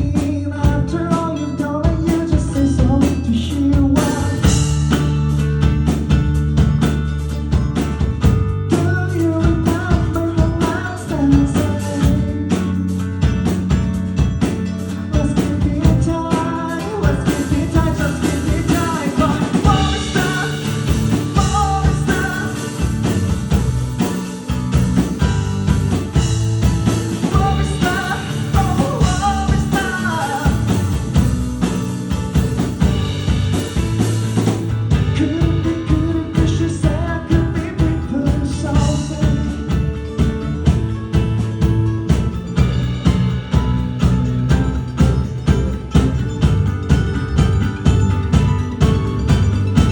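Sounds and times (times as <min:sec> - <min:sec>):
person singing: 0:00.0 - 0:04.8, 0:08.7 - 0:12.6, 0:15.1 - 0:23.3, 0:27.1 - 0:31.2, 0:35.0 - 0:39.9
rock band playing live: 0:00.0 - 0:49.9.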